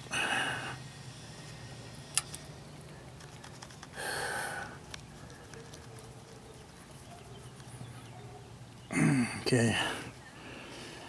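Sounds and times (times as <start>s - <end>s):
steady low hum: 0.0s - 5.6s.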